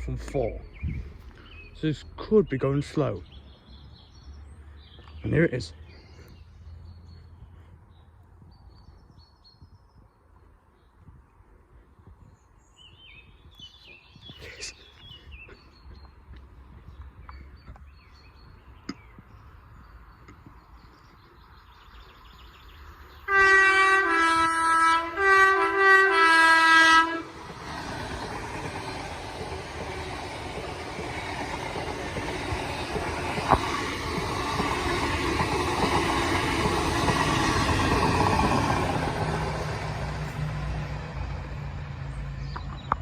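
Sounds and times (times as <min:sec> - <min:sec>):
train rail rumble: 0:13.6 - 0:43.0
train two-tone horn: 0:23.3 - 0:27.4.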